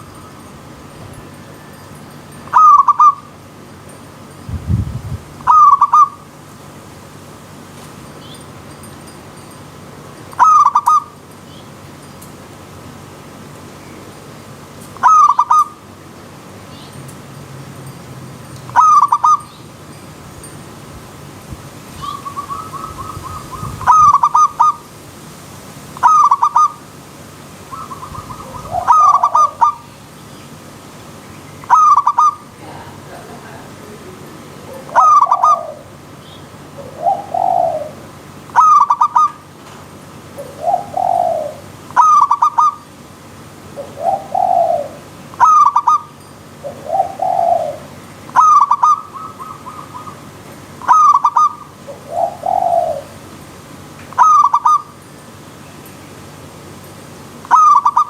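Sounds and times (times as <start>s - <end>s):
doves cooing: 0.0s - 3.4s, 5.4s - 6.4s, 10.3s - 11.2s, 15.0s - 15.9s, 18.7s - 19.6s, 21.9s - 24.9s, 26.0s - 27.0s, 27.6s - 30.2s, 31.2s - 53.4s, 54.1s - 55.0s, 57.4s - 58.0s.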